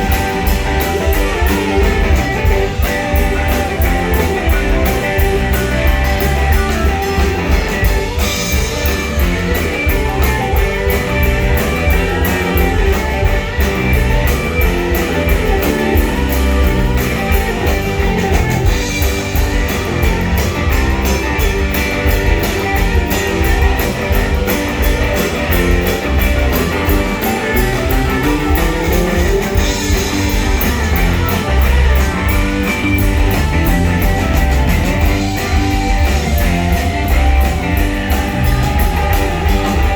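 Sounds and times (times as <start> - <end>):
bass guitar: 0.0 - 39.9
drum kit: 0.0 - 39.9
electric guitars: 0.0 - 39.9.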